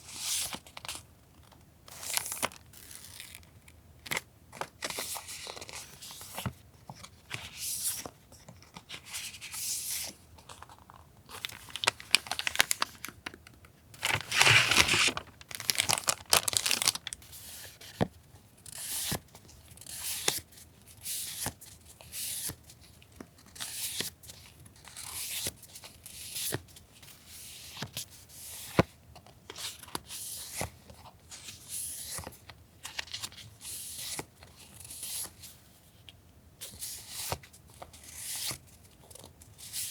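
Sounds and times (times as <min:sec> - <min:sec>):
packaging crinkling and tearing: 0:10.5 - 0:17.2.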